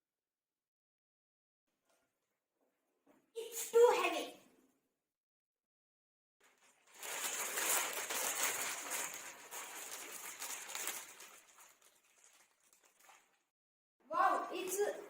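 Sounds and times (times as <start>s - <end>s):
packaging rustling and crinkling: 6.4s - 13.5s.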